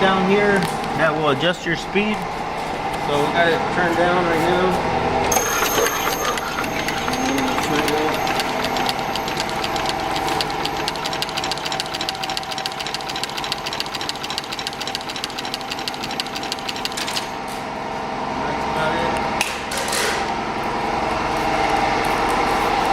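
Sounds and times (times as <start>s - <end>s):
leather stitching machine clattering: 5.3s - 17.4s.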